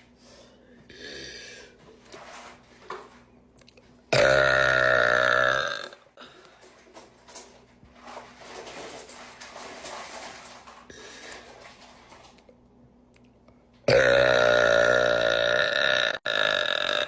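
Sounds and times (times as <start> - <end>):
woman burping loudly: 4.1 - 6.1, 13.9 - 17.0.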